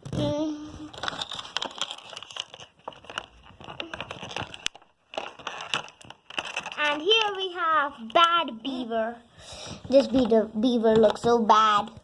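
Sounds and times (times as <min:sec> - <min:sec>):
plastic packaging crinkling: 0:00.0 - 0:08.5.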